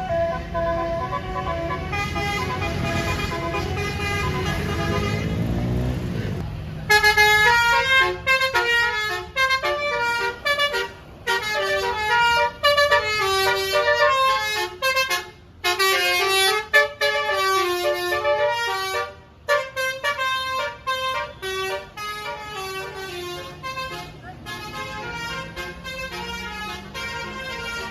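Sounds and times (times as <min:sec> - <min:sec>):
bus horn playing a tune: 0:00.0 - 0:06.1, 0:06.8 - 0:27.9.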